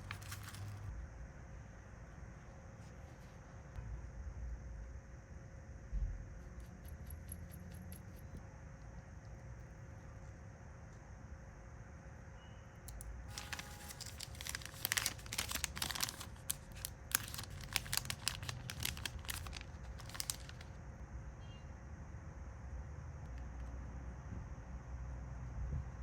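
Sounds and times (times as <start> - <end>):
packaging crinkling and rustling: 0.0 - 0.9, 13.3 - 20.7.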